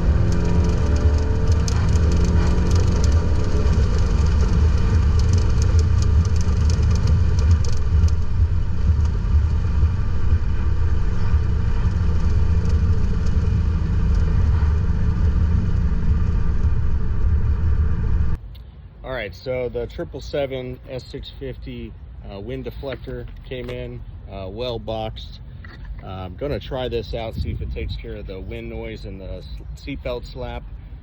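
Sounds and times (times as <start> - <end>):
seatbelt flapping in wind: 0.0 - 18.4
wind and road rumble: 0.0 - 31.0.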